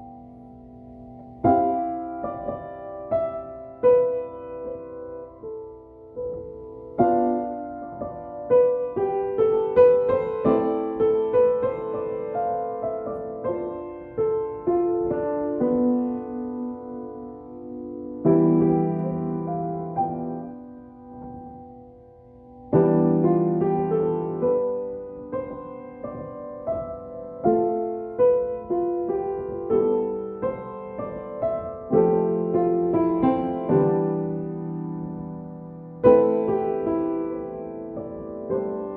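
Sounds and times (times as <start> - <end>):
solo keyboard piano-like melody: 0.0 - 38.9.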